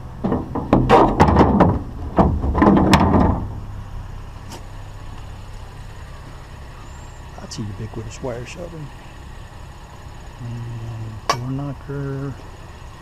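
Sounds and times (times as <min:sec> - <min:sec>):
metal wire shelving clanking: 0:00.0 - 0:03.6
vehicle engine idling: 0:00.0 - 0:13.0.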